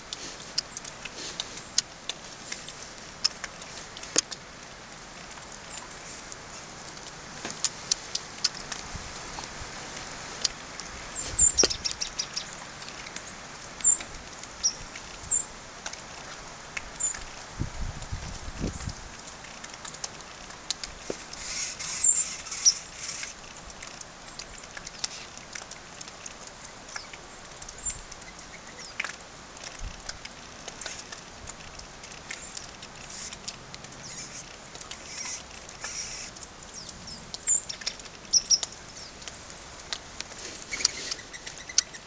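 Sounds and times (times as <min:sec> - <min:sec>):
small birds chirping: 0:10.7 - 0:15.5, 0:21.1 - 0:23.4, 0:26.6 - 0:29.1, 0:32.2 - 0:39.7, 0:40.4 - 0:42.0.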